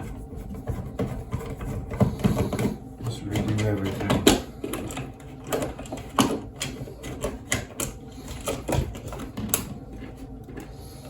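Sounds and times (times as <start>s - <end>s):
hand tools and wires clicking: 3.3s - 10.7s.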